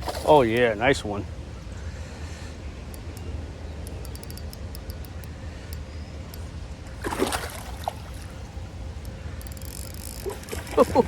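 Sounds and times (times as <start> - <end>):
faint clicks: 2.9 - 6.5, 9.0 - 10.4
fish thrashing splash: 7.0 - 8.3.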